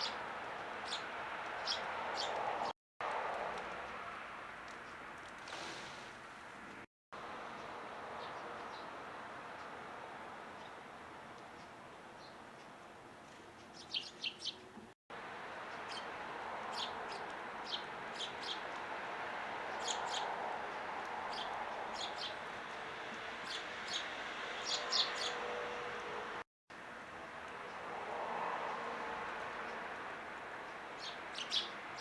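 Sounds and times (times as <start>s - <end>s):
sparrows chirping: 0.0s - 2.7s, 8.1s - 9.0s, 10.4s - 14.8s, 15.5s - 25.8s, 30.6s - 32.0s.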